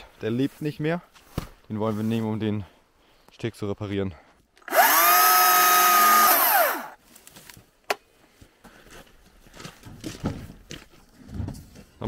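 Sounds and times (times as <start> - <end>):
electric power saw whining: 4.6 - 7.0.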